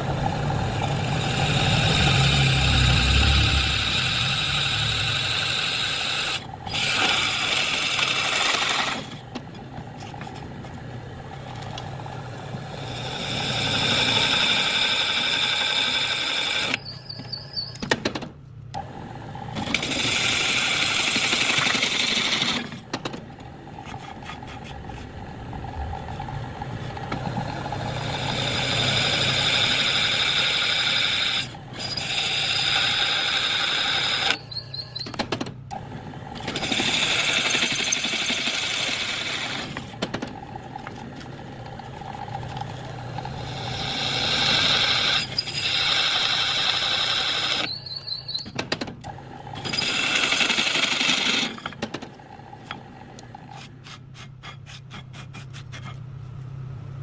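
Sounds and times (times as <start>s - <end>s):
machine running: 0.0s - 16.8s, 18.7s - 35.1s, 35.7s - 47.8s
machine drilling metal with ringing: 27.6s - 35.1s, 36.4s - 39.9s, 43.4s - 48.6s, 49.6s - 51.8s.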